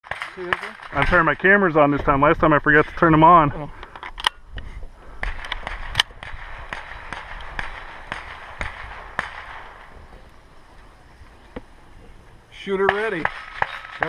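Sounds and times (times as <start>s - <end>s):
distant rapid gunshots: 0.0s - 1.3s, 5.2s - 10.1s, 12.8s - 14.0s.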